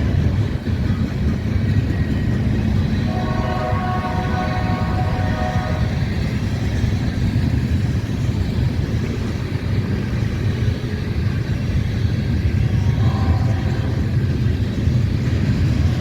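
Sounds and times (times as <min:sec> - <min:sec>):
freight train rumbling: 0:00.0 - 0:16.0
train horn: 0:03.0 - 0:06.2, 0:12.8 - 0:14.2.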